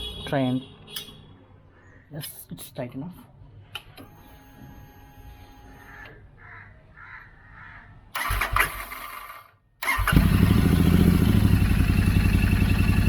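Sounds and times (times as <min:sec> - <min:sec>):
motorcycle engine idling: 0:09.8 - 0:13.0.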